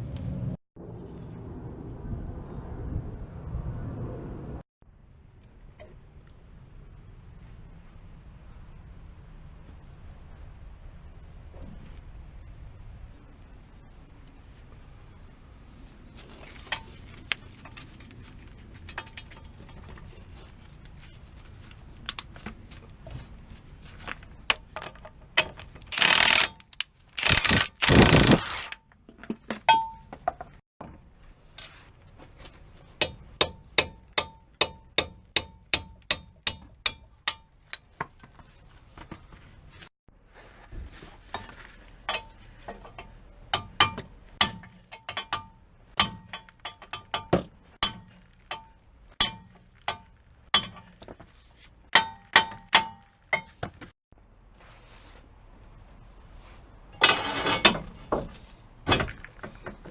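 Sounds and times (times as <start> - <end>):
ratchet clicking: 25.9 - 28.8.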